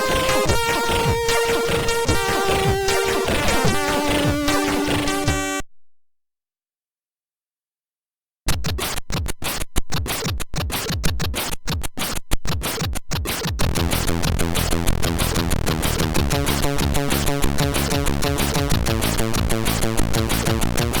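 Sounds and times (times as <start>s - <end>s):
choppy noise-drum hits: 0.0s - 5.5s, 12.6s - 21.0s
chiptune with bass and melody: 0.0s - 5.6s, 8.5s - 21.0s.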